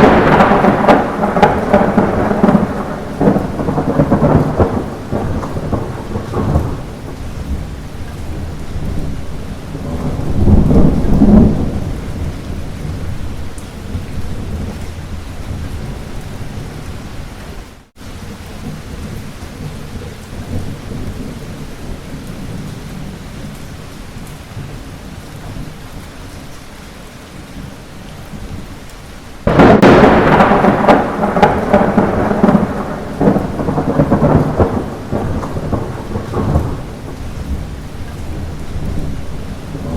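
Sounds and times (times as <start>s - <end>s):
loud thunderclap: 0.0s - 16.0s, 29.4s - 39.9s
thunder rumbling: 0.0s - 17.6s, 29.4s - 39.9s
light rain: 0.0s - 39.9s.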